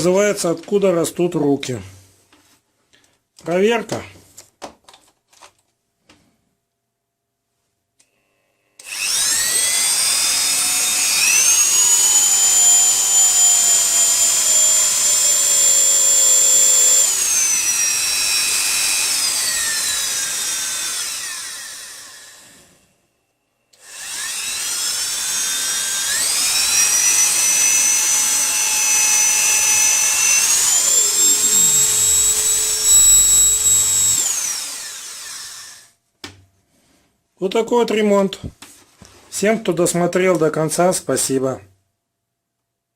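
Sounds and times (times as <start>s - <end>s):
rotary tool motor whine: 8.8s - 22.8s, 23.8s - 35.9s.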